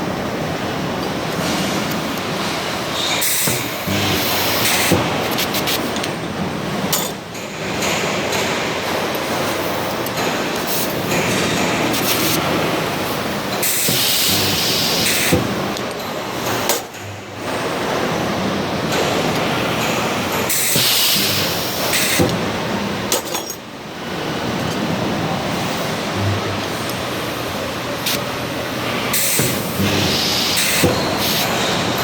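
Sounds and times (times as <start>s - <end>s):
industrial machine noise: 0.0s - 32.0s
loud hiss bursts: 13.6s - 15.4s, 20.5s - 22.2s, 29.1s - 31.7s.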